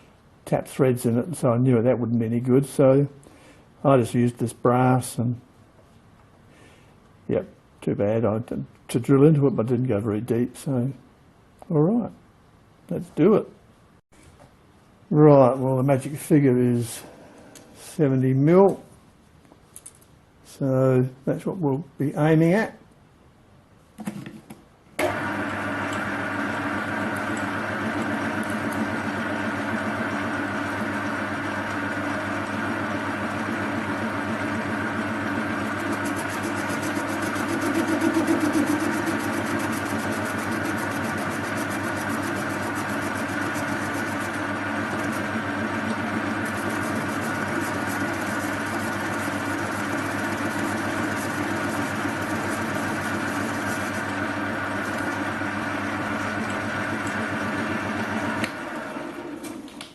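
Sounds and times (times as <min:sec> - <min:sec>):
metal lathe motor humming: 0:25.0 - 0:59.7.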